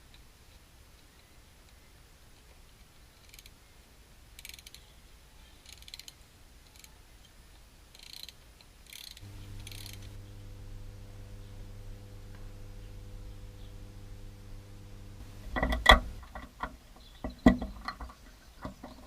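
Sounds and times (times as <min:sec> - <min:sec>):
ratchet wrench clicking: 0:03.2 - 0:03.6, 0:04.4 - 0:04.8, 0:05.6 - 0:06.1, 0:07.9 - 0:10.1
steady low hum: 0:09.2 - 0:16.6.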